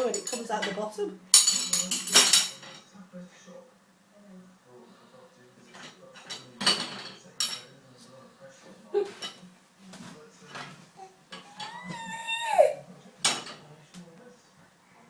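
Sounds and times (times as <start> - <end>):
metal spoon clinking against racks: 0.0 - 0.8, 1.4 - 2.8.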